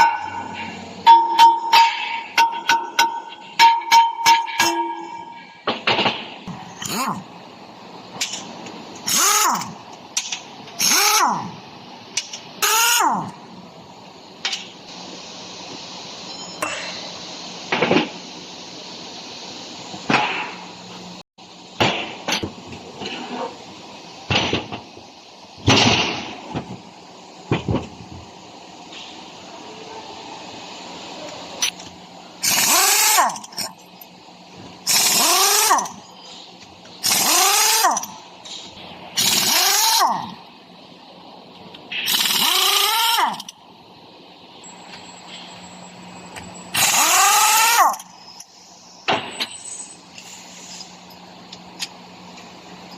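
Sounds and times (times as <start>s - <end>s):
sharp metallic knocks: 0.0s - 6.2s
steady hum: 0.0s - 52.9s
power tool motor whine: 46.7s - 48.0s.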